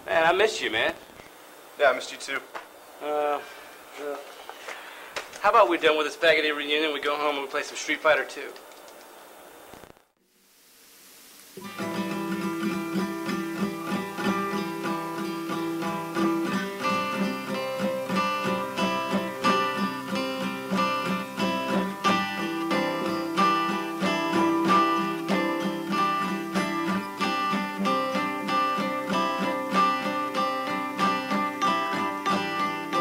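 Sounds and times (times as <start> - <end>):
strummed acoustic guitar: 11.6 - 33.0.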